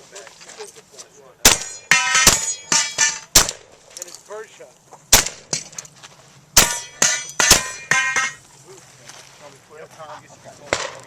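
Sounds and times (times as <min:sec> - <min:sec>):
shotgun shots: 0:01.4 - 0:03.7, 0:05.1 - 0:05.6, 0:06.6 - 0:08.4.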